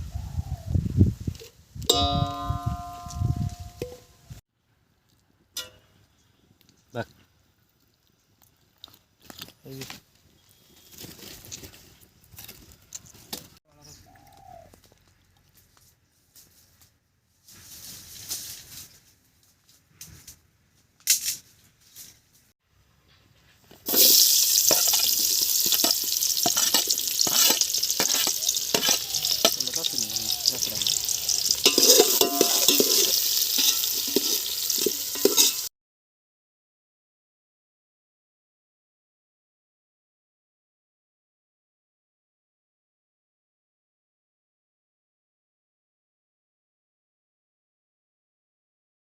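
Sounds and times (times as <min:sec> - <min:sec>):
curry sizzling in a pan: 0:23.9 - 0:35.7
spoon scraping metal pan: 0:23.9 - 0:35.7.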